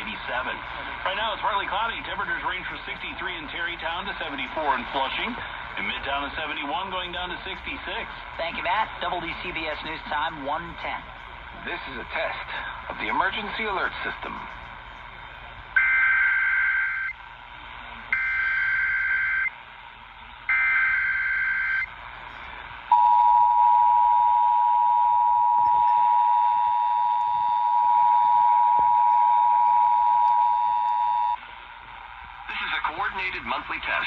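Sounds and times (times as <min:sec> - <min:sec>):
steady two-tone attention signal: 0:18.1 - 0:19.6, 0:22.9 - 0:31.4.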